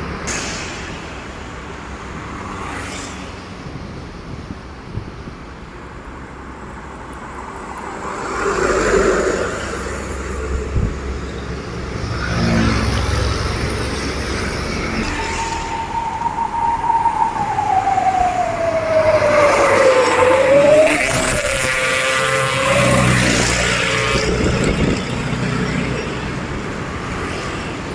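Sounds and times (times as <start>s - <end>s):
heavy trucks passing: 0.0s - 27.9s
wailing siren-like tone: 14.9s - 25.1s.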